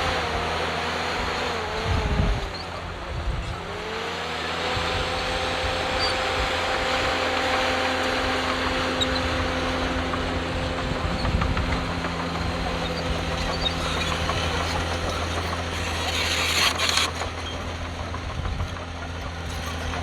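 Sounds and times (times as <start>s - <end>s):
diesel engine running under work: 0.0s - 20.0s
machine whine: 5.6s - 20.0s.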